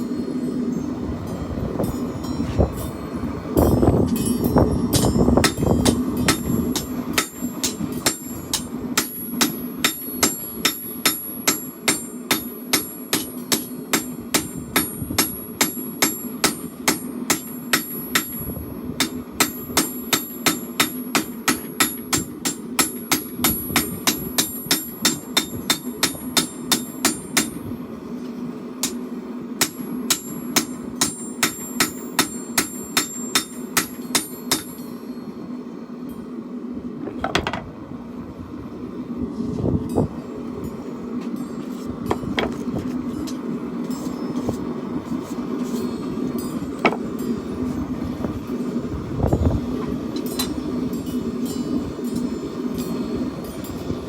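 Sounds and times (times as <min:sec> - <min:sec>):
hammer striking steel on anvil: 0:01.8 - 0:27.7, 0:28.8 - 0:35.3, 0:45.6 - 0:47.5, 0:50.2 - 0:53.8.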